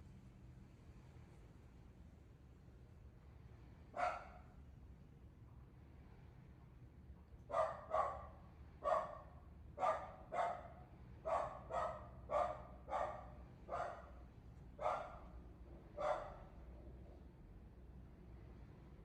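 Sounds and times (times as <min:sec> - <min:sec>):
dog barking: 0:04.0 - 0:04.5, 0:07.5 - 0:14.2, 0:14.8 - 0:15.4, 0:16.0 - 0:16.5.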